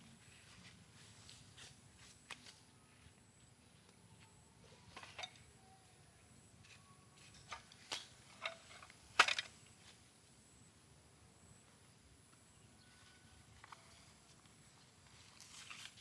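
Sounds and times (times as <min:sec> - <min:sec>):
objects clicking and knocking: 0:06.6 - 0:09.6.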